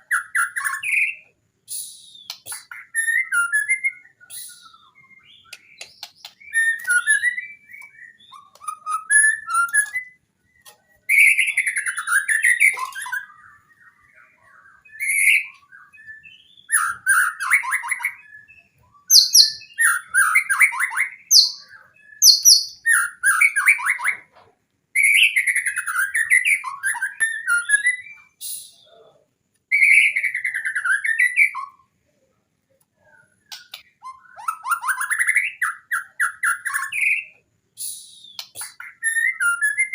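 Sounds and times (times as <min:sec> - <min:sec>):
songbird singing varied phrases: 0:00.0 - 0:39.9.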